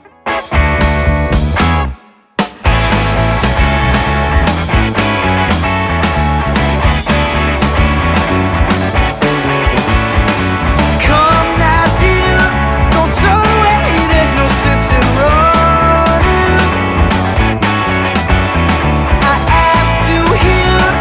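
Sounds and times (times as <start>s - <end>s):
rock band playing: 0.0s - 21.0s
person singing: 11.0s - 16.9s, 19.1s - 21.0s.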